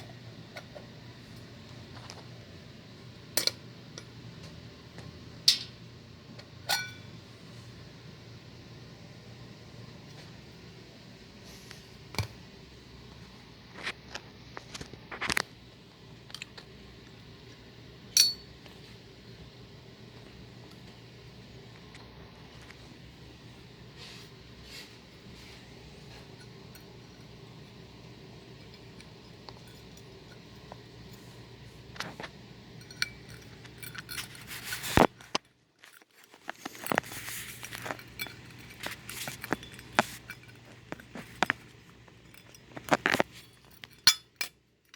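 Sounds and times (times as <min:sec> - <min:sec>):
steady low hum: 0:00.0 - 0:35.6
sharp ringing clink: 0:06.7 - 0:07.0, 0:18.2 - 0:18.5, 0:44.0 - 0:44.3
metal and glass parts clinking: 0:18.2 - 0:18.5, 0:32.8 - 0:34.7, 0:37.6 - 0:44.9.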